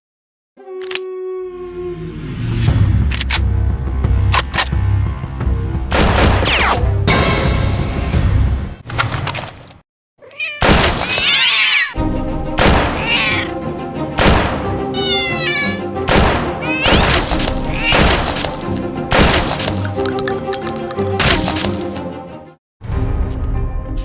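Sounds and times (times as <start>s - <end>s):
cat meowing: 10.2s - 12.0s, 12.8s - 13.6s, 14.9s - 15.9s, 16.6s - 18.2s.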